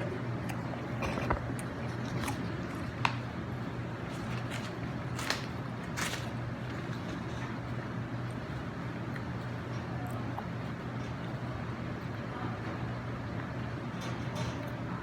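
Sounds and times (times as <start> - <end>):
chewing food: 0.0 - 12.2
sharp crunches: 4.1 - 6.4.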